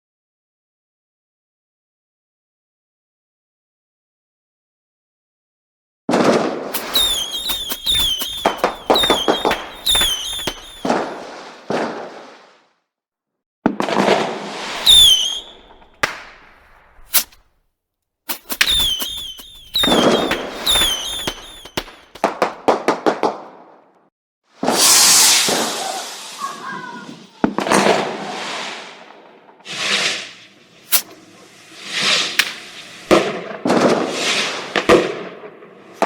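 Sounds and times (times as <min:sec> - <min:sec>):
fireworks cracking and banging: 0:06.1 - 0:12.5, 0:13.7 - 0:17.4, 0:18.3 - 0:23.8, 0:24.6 - 0:36.0
fireworks whistling: 0:06.2 - 0:12.5, 0:13.9 - 0:17.4, 0:18.3 - 0:22.8, 0:24.6 - 0:35.0.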